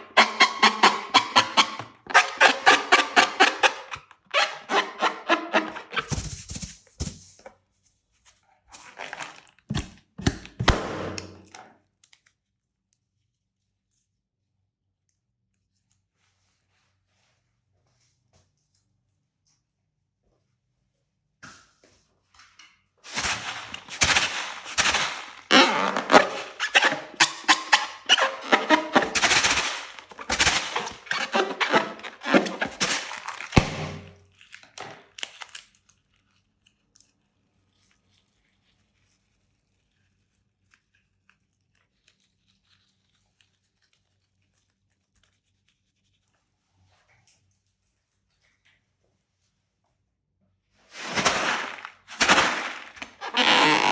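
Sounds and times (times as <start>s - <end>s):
slime squelching and popping: 5.8s - 7.5s, 23.1s - 35.7s.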